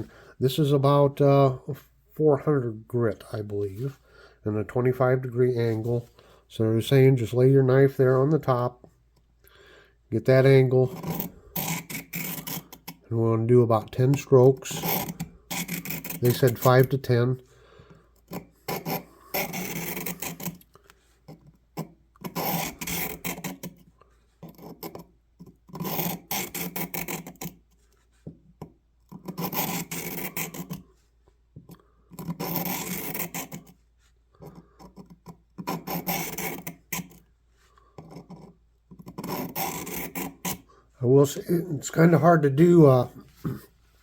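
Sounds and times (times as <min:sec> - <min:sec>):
knife rasping on sharpener: 0:10.9 - 0:13.1, 0:14.6 - 0:16.9, 0:18.2 - 0:20.7, 0:21.3 - 0:23.8, 0:24.4 - 0:27.6, 0:29.1 - 0:30.9, 0:32.2 - 0:33.8, 0:34.4 - 0:37.2, 0:38.0 - 0:40.7.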